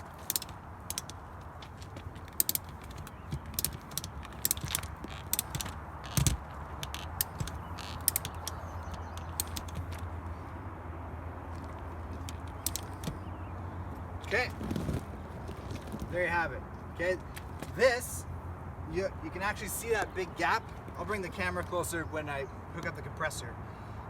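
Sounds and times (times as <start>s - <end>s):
ratchet strap clicking: 0.0s - 10.1s, 11.5s - 13.3s.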